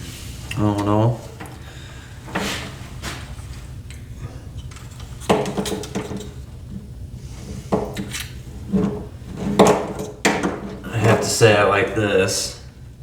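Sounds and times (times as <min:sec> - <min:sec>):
steady low hum: 0:00.0 - 0:13.0
plastic parts clicking and clattering: 0:04.6 - 0:06.4.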